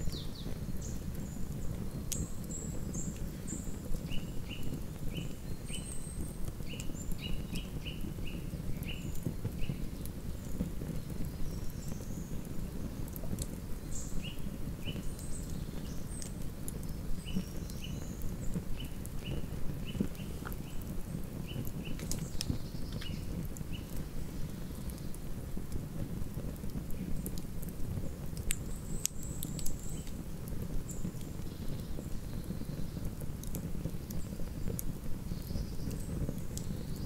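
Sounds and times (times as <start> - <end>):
campfire crackling: 0.0 - 37.0.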